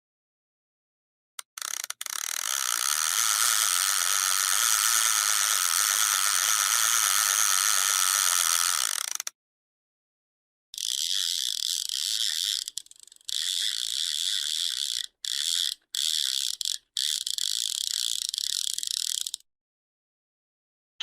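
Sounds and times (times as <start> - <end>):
fishing reel ratchet clicking: 1.4 - 9.4, 10.8 - 19.5.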